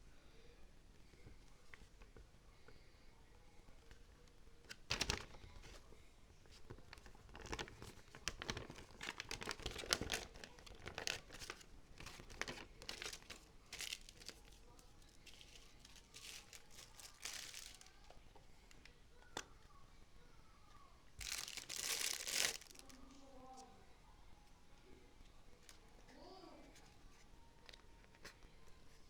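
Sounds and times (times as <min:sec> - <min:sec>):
packaging crinkling: 0:06.6 - 0:18.2, 0:21.2 - 0:23.0.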